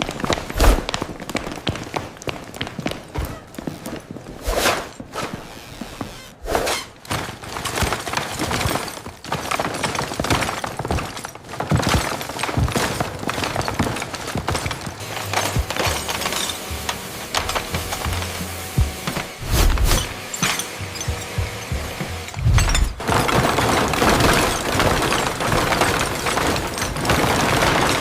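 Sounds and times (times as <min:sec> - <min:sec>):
knocks and thuds of demolition: 0:06.8 - 0:28.0
breaking material crashing: 0:07.0 - 0:28.0.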